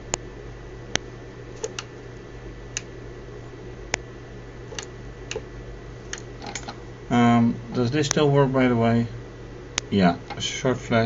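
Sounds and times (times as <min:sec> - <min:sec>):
steady low hum: 0:00.0 - 0:11.0
sharp clicks: 0:00.9 - 0:01.9, 0:04.7 - 0:05.5, 0:06.1 - 0:06.8.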